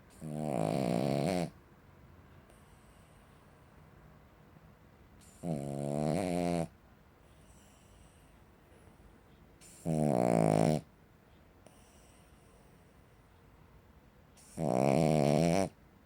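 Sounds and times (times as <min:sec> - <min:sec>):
dog snoring: 0:00.1 - 0:01.6, 0:05.2 - 0:08.2, 0:09.6 - 0:10.9, 0:14.4 - 0:15.8
dog breathing quietly: 0:02.4 - 0:03.8, 0:05.2 - 0:10.9, 0:11.6 - 0:13.3.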